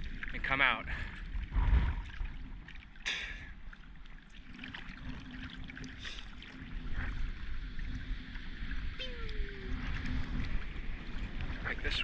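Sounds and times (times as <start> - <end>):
water sloshing against surfboard: 0.0 - 12.0.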